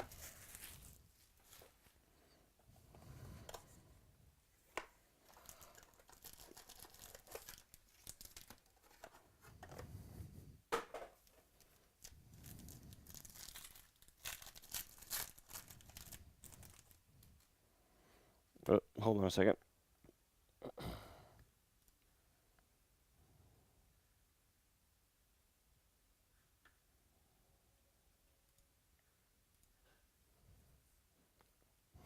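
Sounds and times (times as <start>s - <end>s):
wrapper tearing and crinkling: 0.0s - 1.7s, 5.3s - 9.0s, 11.6s - 17.0s.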